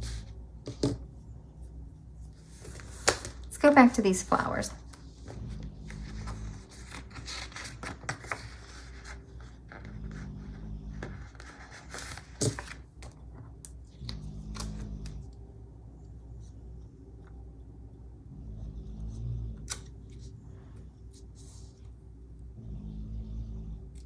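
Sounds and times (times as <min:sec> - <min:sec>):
paper rustling and scraping: 0:02.4 - 0:03.7, 0:04.9 - 0:13.2.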